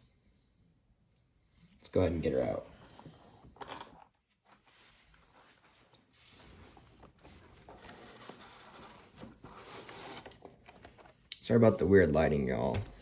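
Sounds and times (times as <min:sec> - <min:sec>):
packaging rustling and scraping: 0:02.4 - 0:11.3.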